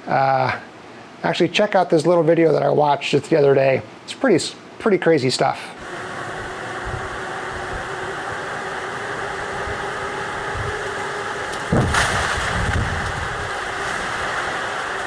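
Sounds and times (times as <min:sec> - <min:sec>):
strong wind blowing: 0:05.8 - 0:15.0
loud crash: 0:11.5 - 0:15.0.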